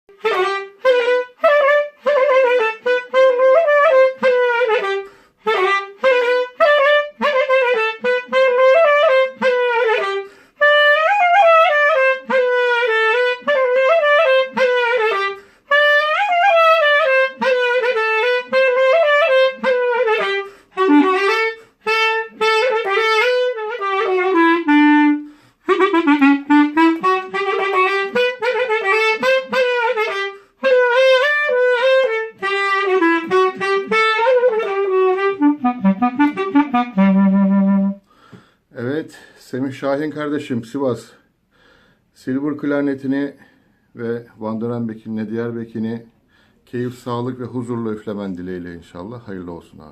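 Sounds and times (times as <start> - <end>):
clarinet playing fast phrases: 0.1 - 38.1.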